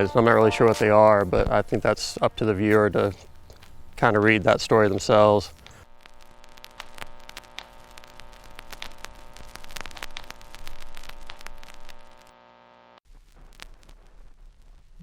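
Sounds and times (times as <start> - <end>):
faint hiss: 0.0 - 12.0
crackling static clicks: 3.0 - 15.0.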